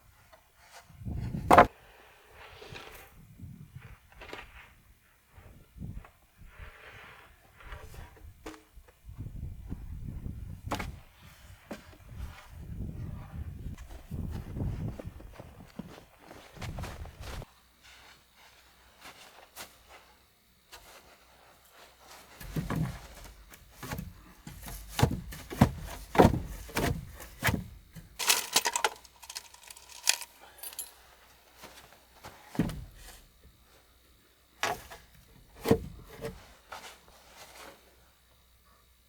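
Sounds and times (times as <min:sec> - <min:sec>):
objects knocking and clinking: 0:28.2 - 0:30.9.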